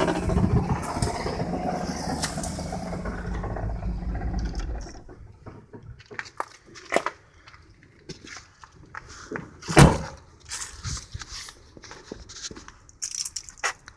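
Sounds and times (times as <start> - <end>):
van engine running with rattle: 0.0 - 5.4.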